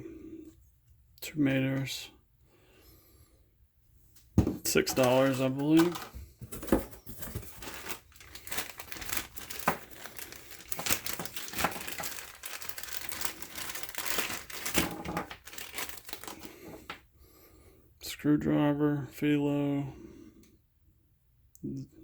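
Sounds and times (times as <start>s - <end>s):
packaging crinkling and rustling: 4.7s - 17.0s.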